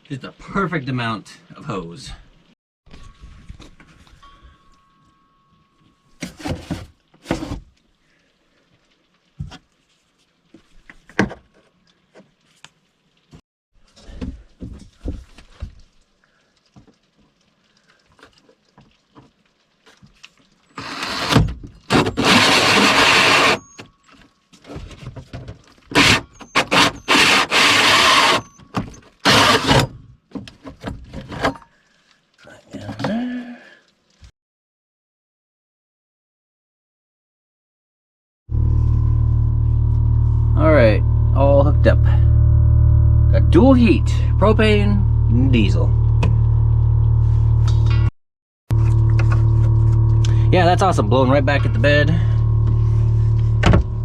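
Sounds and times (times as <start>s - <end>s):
hose scraping and rustling: 6.2s - 7.8s, 19.8s - 29.7s, 48.7s - 54.0s.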